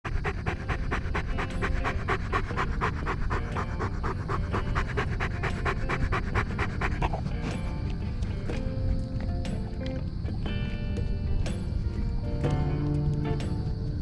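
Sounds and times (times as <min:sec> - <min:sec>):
dog panting rapidly: 0:00.0 - 0:08.5.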